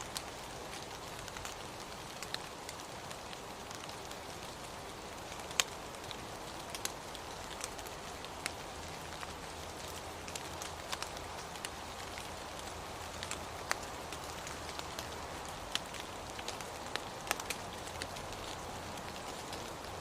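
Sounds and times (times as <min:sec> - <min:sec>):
steady rain hiss: 0:00.0 - 0:20.0.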